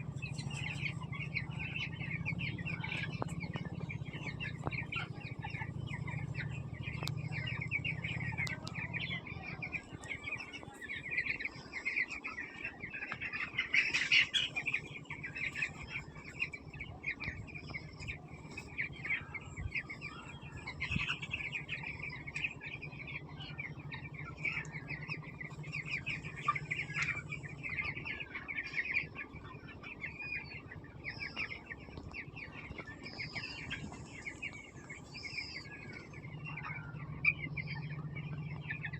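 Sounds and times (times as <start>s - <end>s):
chicks peeping: 0.0s - 38.9s
low steady hum: 0.0s - 38.9s.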